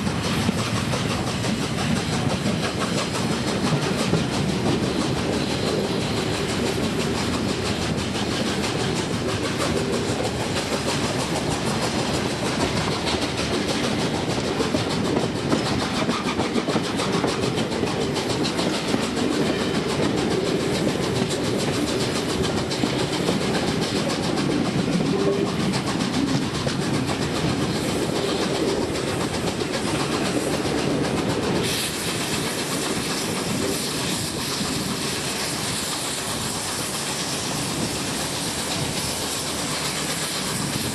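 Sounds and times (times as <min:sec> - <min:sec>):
steam train running past: 0:00.0 - 0:40.9
high hiss: 0:27.2 - 0:40.9.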